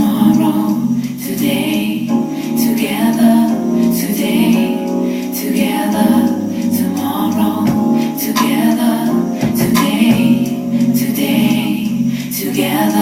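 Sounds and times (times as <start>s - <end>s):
female choir singing: 0.0s - 13.0s.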